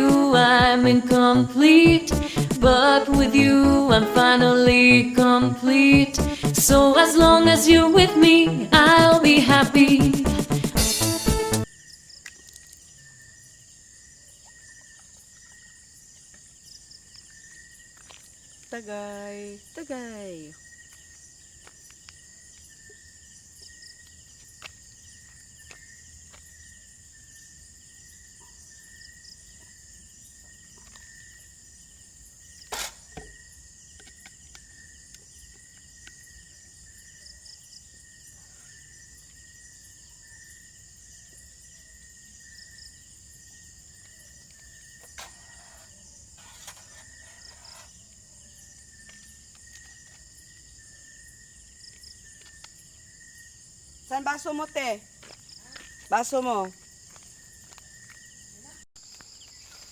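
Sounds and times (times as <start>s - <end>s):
insects chirring: 11.7s - 59.9s.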